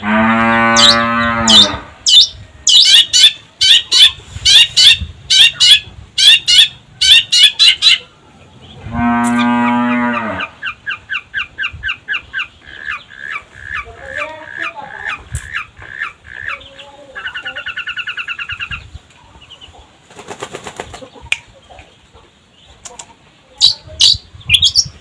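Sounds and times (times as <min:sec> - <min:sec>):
bird low drawn-out call: 0:00.0 - 0:19.0.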